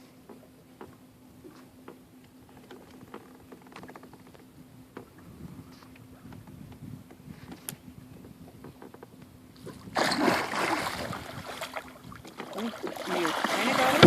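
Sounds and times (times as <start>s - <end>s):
fish thrashing water splashing: 10.0s - 14.0s.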